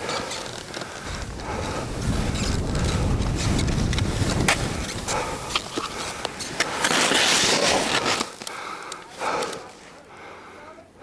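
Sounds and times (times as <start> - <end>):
skis scraping over snow: 0.0 - 10.0
wind on microphone: 1.0 - 6.2.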